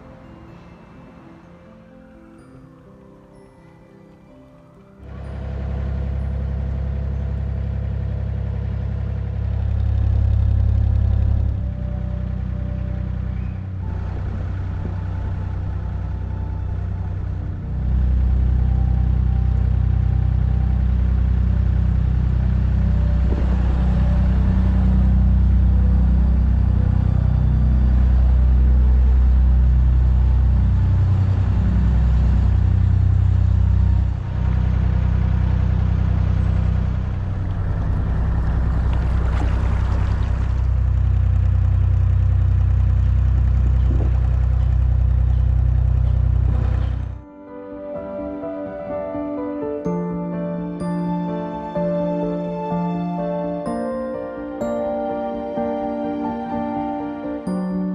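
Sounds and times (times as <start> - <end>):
boat engine running: 4.8 - 47.4.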